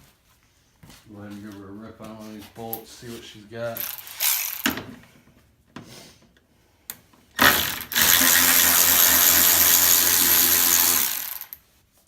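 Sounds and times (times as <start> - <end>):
cordless ratchet motor whirring: 7.4 - 11.6.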